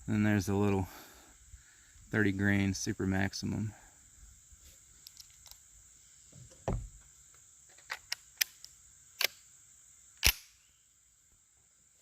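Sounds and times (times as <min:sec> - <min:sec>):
high insect drone: 0:00.0 - 0:12.0
soft thump: 0:06.3 - 0:07.0.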